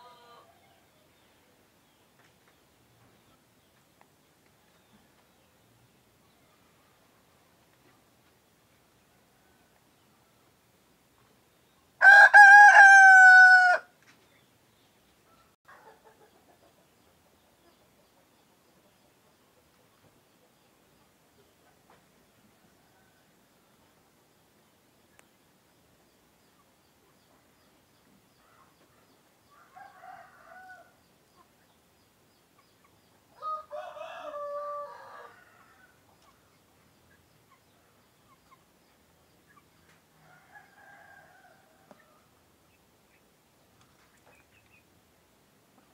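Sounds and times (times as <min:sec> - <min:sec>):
cockerel crowing: 0:12.0 - 0:13.9, 0:33.4 - 0:36.0.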